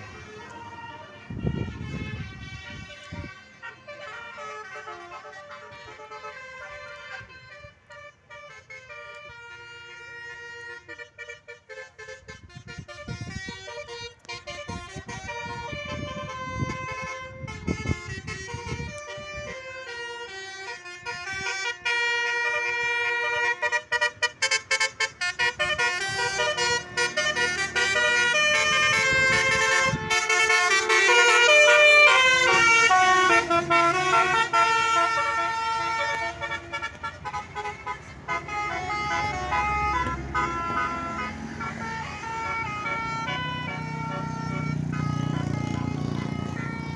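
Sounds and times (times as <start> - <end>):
low engine rumble: 0.0 - 9.4, 25.5 - 46.9
multi-tone bus horns melody: 0.0 - 46.9.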